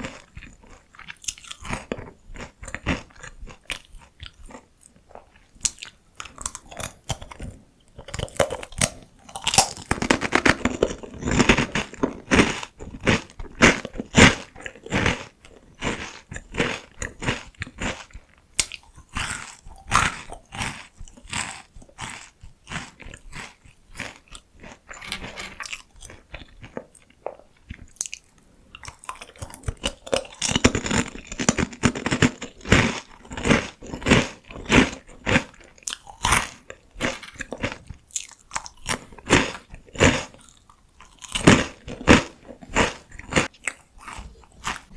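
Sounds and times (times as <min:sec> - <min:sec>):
crunching and chewing of crisps: 0:00.0 - 0:44.9.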